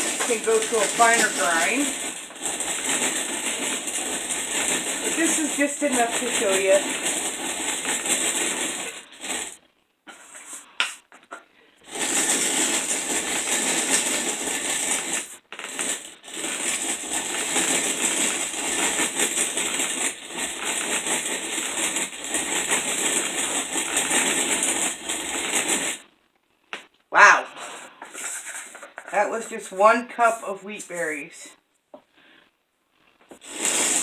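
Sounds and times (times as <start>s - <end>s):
grain mill clicks: 0.0s - 9.6s, 11.9s - 26.0s
hand grain mill grinding: 0.0s - 31.1s, 32.9s - 34.0s.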